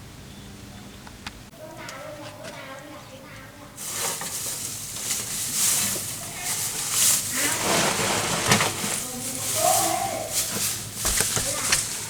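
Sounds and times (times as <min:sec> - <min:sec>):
food sizzling in hot oil: 0:03.8 - 0:07.4.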